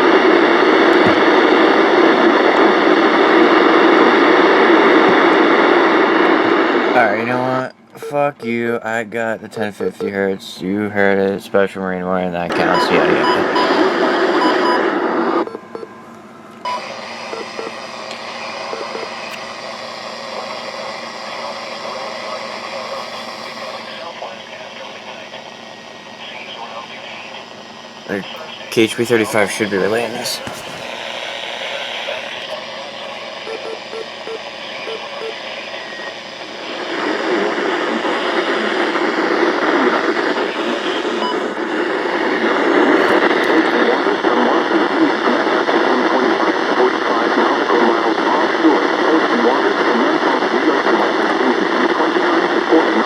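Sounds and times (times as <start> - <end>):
crackly radio static: 0.0 - 8.6, 11.9 - 53.0
steady radio hiss: 0.0 - 53.0.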